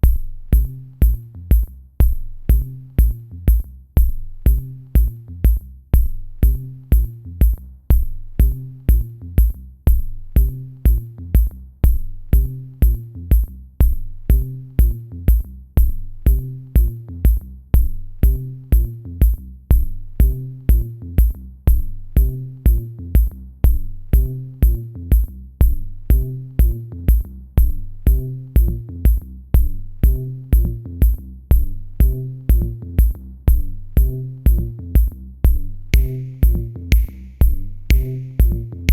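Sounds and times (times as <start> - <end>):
drum machine beat: 0.0 - 38.9
repeating bass line: 0.0 - 38.9
electronic music: 35.9 - 38.9.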